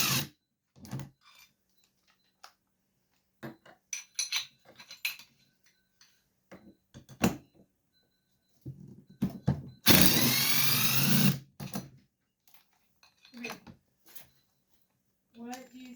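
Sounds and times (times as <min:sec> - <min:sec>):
metal tools clinking and clattering: 0:03.4 - 0:06.2, 0:12.5 - 0:14.4.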